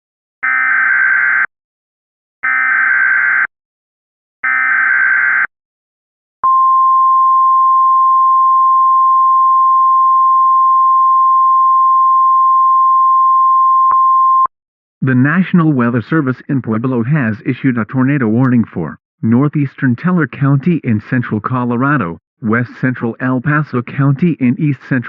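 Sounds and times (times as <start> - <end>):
steady high alarm tone: 0.4 - 1.5.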